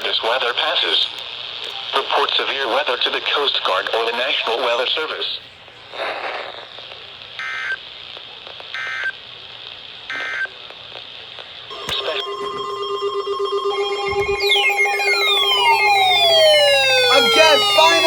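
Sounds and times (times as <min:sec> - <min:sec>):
steady radio hiss: 0:00.0 - 0:12.5, 0:16.6 - 0:18.0
buzzing digital data tones: 0:11.7 - 0:18.0
chord of electronic tones: 0:11.7 - 0:18.0
falling electronic sweeps: 0:11.7 - 0:18.0.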